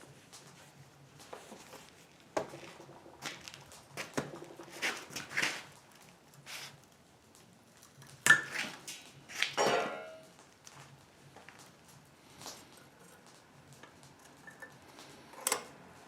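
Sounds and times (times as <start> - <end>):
metal tools clanking: 9.6 - 10.2
ringing metallic clang: 9.6 - 10.3.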